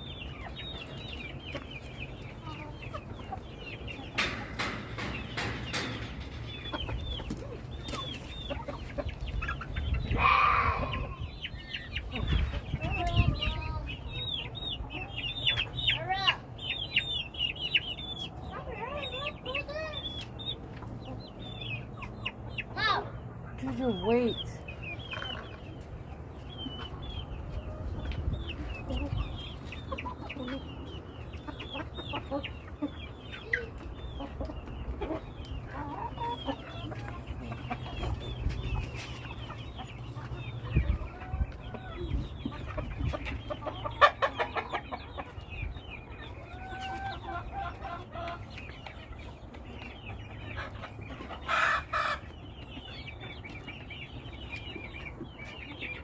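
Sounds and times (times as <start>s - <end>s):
chickens clucking and peeping: 0.0s - 56.0s
chicken squawk: 6.8s - 12.8s, 50.6s - 52.3s.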